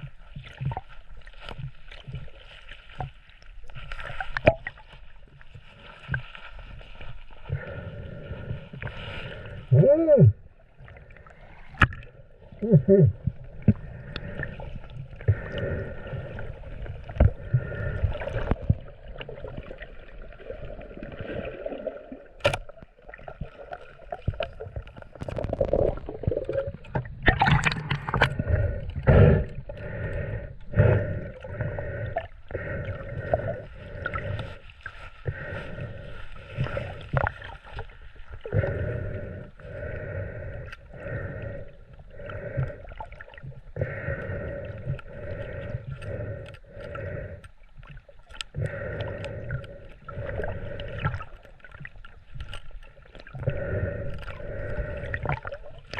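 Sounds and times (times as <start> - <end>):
muffled water sloshing: 0.0 - 55.9
knocks and splashes: 26.8 - 28.4.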